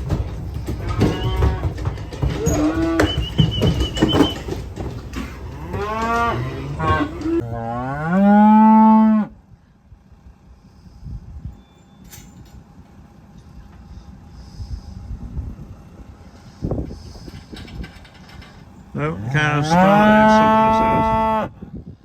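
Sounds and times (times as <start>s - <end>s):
cows mooing: 0.1s - 9.4s, 19.0s - 21.6s.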